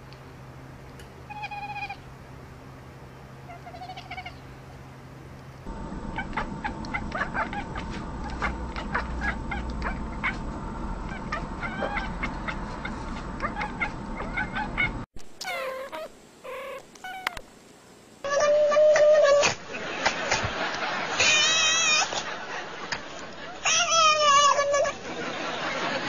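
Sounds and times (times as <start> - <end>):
cats meowing: 1.3 - 2.0, 11.1 - 17.4, 18.3 - 19.6, 21.2 - 22.2, 23.6 - 25.0
steady hum: 4.3 - 15.3
loud drawn-out cat call: 21.2 - 22.2, 23.6 - 25.0.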